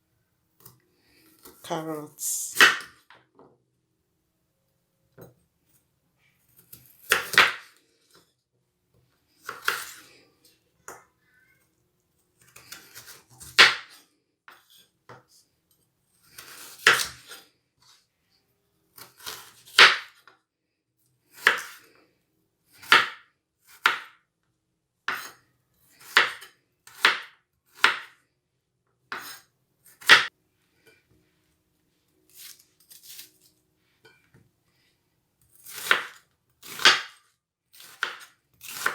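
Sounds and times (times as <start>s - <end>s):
knife chopping on cutting board: 6.7s - 7.8s, 9.4s - 10.0s, 12.9s - 14.0s, 16.4s - 17.4s, 19.0s - 20.2s, 21.4s - 21.8s, 22.8s - 24.2s, 25.1s - 25.4s, 26.0s - 28.2s, 29.1s - 29.4s, 30.0s - 30.3s, 35.6s - 37.2s, 37.8s - 38.9s.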